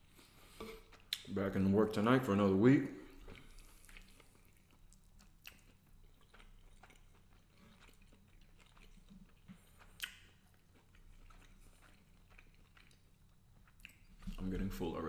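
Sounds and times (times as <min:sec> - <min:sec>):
faint chewing: 0:00.0 - 0:01.3, 0:02.9 - 0:15.0
wet mouth clicks: 0:09.8 - 0:10.4.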